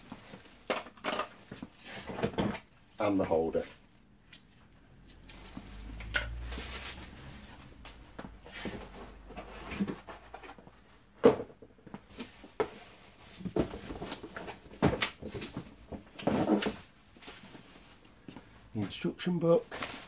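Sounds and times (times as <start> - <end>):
packaging rustling: 19.5 - 20.0.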